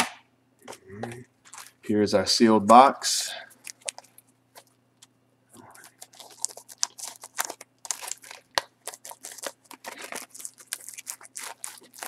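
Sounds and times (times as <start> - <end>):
plastic shrink-wrap crinkling: 1.1 - 1.9, 3.4 - 4.8, 5.7 - 12.0.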